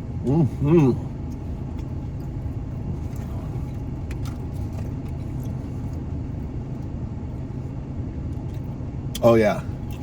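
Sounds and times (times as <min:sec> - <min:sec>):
car engine idling: 0:00.0 - 0:10.0.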